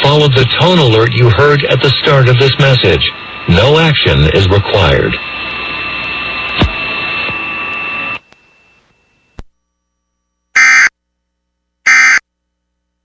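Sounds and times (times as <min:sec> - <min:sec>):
digital data tone bursts: 0:10.6 - 0:10.9, 0:11.9 - 0:12.2.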